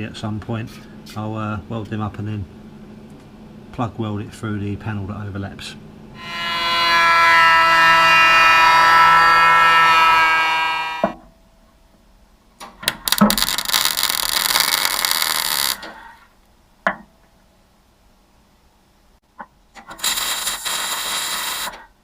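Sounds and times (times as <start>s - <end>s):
welder buzzing and sizzling: 6.2s - 11.2s, 12.9s - 16.1s, 19.9s - 21.9s.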